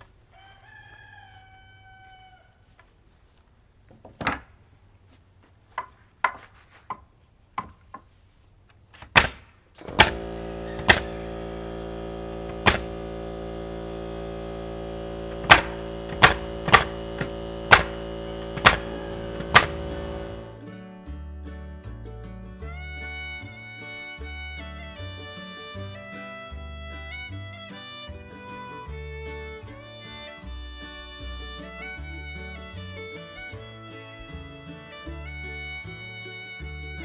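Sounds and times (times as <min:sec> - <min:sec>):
nail gun firing: 0:09.0 - 0:20.6.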